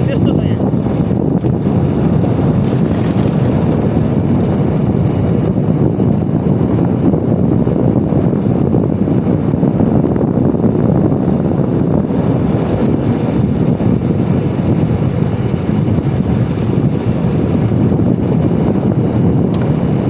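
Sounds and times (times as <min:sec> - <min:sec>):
wind buffeting microphone: 0:00.0 - 0:20.0.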